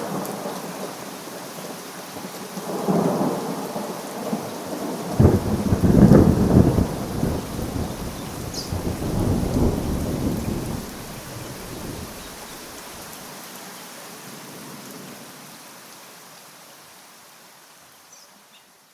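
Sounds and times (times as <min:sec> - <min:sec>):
steady rain: 0:00.0 - 0:18.9
thunder rumbling: 0:05.0 - 0:13.0.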